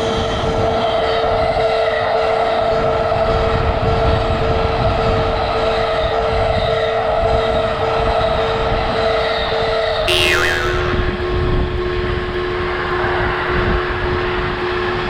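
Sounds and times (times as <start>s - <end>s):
wavering whistle-like sound: 10.1s - 11.2s
steady lower tone: 10.1s - 11.3s.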